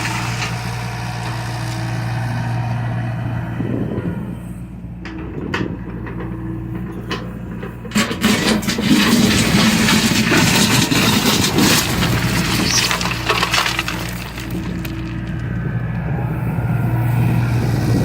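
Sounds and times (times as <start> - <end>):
excavator engine running: 0.0 - 18.0
sharp knocks and scraping: 5.0 - 15.6.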